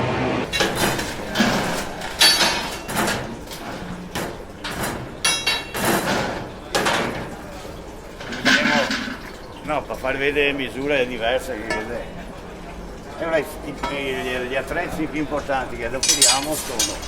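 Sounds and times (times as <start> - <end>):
glassworking tools knocking and clanking: 0.4 - 7.4, 8.2 - 9.2, 15.4 - 17.0.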